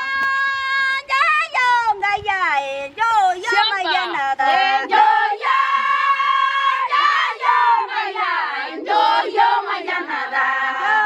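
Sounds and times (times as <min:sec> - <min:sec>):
girls singing in high voices: 0:04.3 - 0:11.0.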